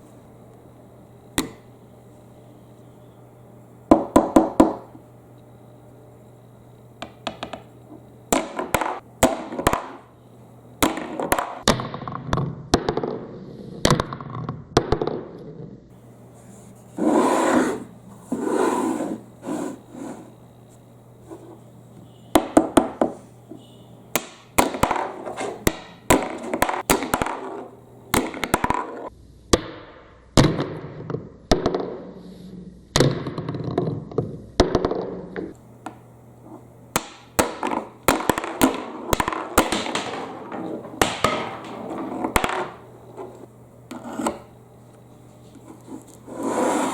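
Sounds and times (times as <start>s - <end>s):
steady low hum: 0.0s - 46.9s.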